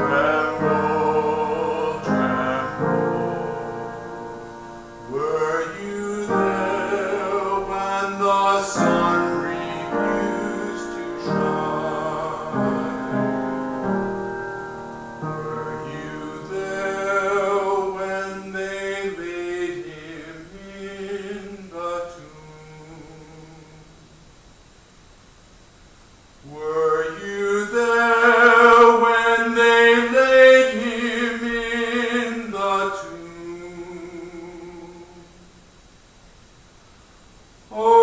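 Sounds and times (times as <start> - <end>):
piano chords: 0.0 - 18.3
person singing long notes: 0.0 - 23.7.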